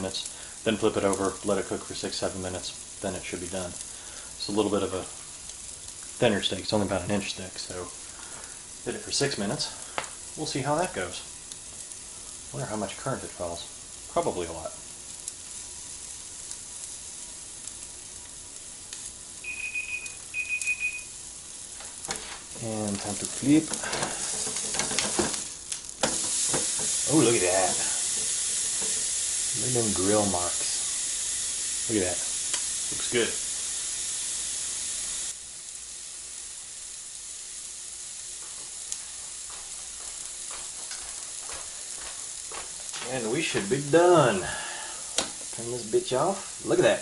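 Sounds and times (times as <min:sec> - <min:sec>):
small crackles: 0:00.0 - 0:47.0
steak sizzling on a grill: 0:00.0 - 0:47.0
timer beeping: 0:19.4 - 0:21.1.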